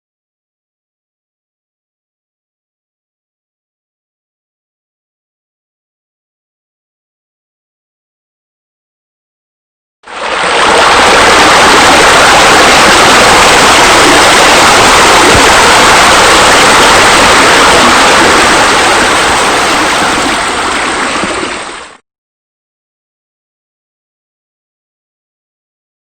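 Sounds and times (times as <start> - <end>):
loud rushing noise: 10.1 - 21.9.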